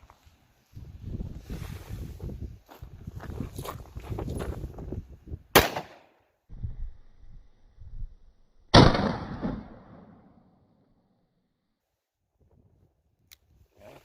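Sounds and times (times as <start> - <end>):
revolver gunshot: 5.5 - 6.1, 8.7 - 10.4.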